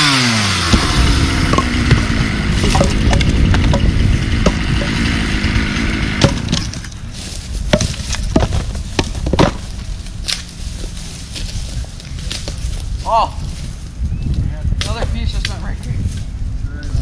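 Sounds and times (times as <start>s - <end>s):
chainsaw idling: 0.0s - 7.0s
falling wood knocking and cracking: 0.7s - 5.0s, 6.2s - 7.0s, 7.6s - 10.4s.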